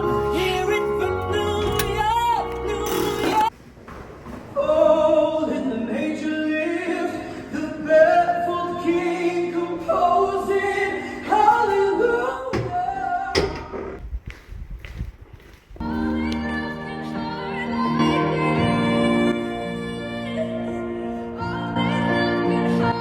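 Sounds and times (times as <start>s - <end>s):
music: 0.0s - 3.5s, 15.8s - 23.0s
person singing: 0.0s - 3.5s.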